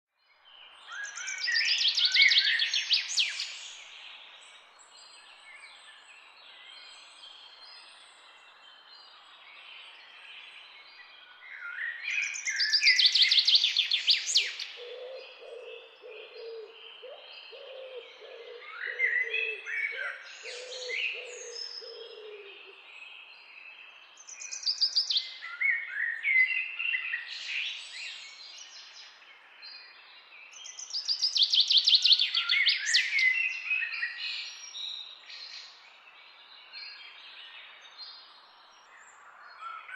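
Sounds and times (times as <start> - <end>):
songbird singing with trill: 0.1 - 39.9
quieter bird calls: 11.5 - 39.9.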